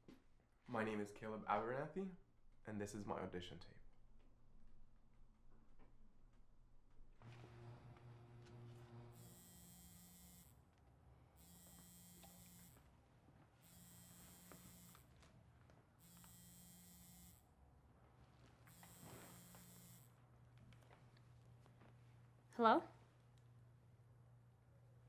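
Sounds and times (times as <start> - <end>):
phone buzzing on vibrate: 8.7 - 10.6, 11.4 - 12.8, 13.6 - 15.1, 16.0 - 17.4, 18.7 - 20.2.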